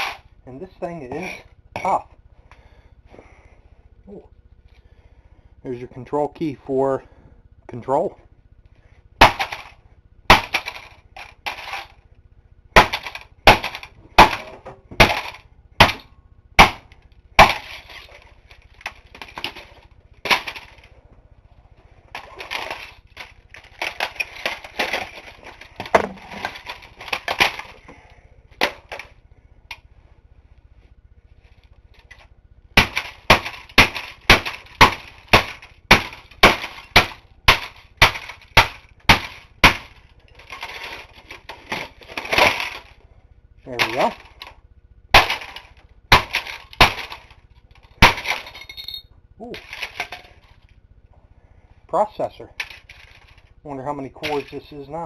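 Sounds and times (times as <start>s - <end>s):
hammer smashing plastic: 0.0s - 0.2s, 9.2s - 11.9s, 12.8s - 20.9s, 22.1s - 27.9s, 32.0s - 43.0s, 45.1s - 48.6s
broken pieces crunching and rattling: 0.0s - 0.3s, 8.5s - 21.0s, 21.8s - 29.8s, 31.4s - 43.0s, 43.7s - 48.8s, 49.5s - 50.9s, 52.5s - 55.0s.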